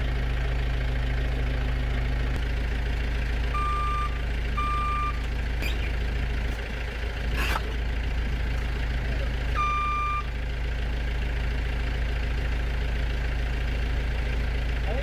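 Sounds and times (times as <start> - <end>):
engine idling: 0.0 - 15.0
backup alarm beeping: 3.6 - 6.0, 9.5 - 10.3
short noisy rasp: 7.2 - 7.9.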